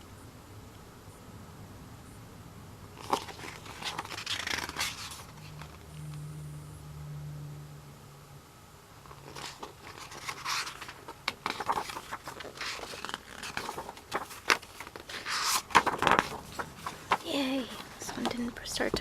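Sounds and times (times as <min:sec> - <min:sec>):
low steady hum: 0:00.0 - 0:19.0
packaging rustling and crinkling: 0:03.0 - 0:05.9, 0:09.1 - 0:18.4.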